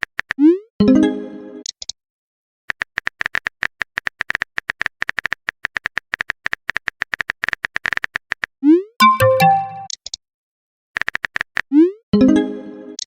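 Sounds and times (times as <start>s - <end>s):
rapid typing clicks: 2.7s - 8.5s, 11.0s - 11.6s
message tone: 9.0s - 9.9s.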